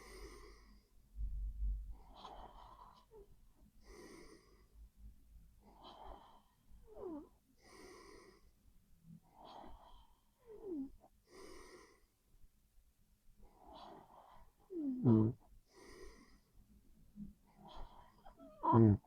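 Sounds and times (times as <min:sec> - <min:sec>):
heavy breathing through the nose: 0:00.0 - 0:01.0, 0:02.0 - 0:04.8, 0:05.6 - 0:08.6, 0:09.2 - 0:10.7, 0:11.3 - 0:12.2, 0:13.4 - 0:16.6, 0:17.3 - 0:19.0.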